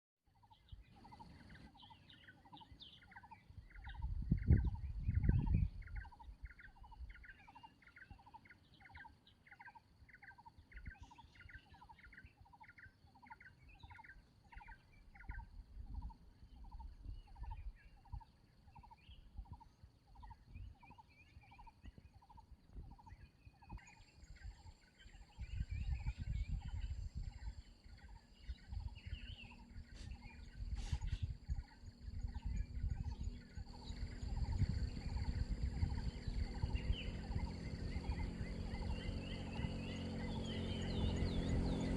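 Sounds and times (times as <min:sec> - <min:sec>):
wind gusts rumbling: 0:03.8 - 0:06.1, 0:25.4 - 0:41.9
bird calling: 0:16.6 - 0:41.9.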